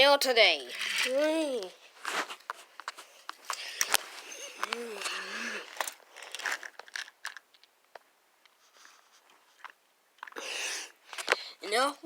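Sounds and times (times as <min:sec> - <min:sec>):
toys rustling: 0:00.3 - 0:07.6
toys clicking: 0:00.6 - 0:01.7.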